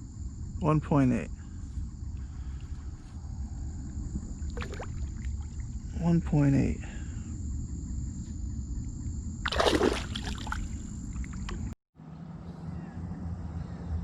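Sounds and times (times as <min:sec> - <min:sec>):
water sloshing against kayak: 0:04.1 - 0:05.9, 0:09.5 - 0:11.7
water splash: 0:04.5 - 0:05.7, 0:09.4 - 0:11.7.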